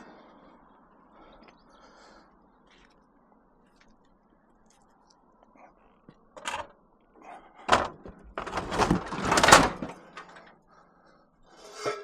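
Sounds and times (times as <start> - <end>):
heavy metal clank: 7.7 - 10.5
metal clattering and scraping: 7.7 - 10.6, 11.6 - 12.0.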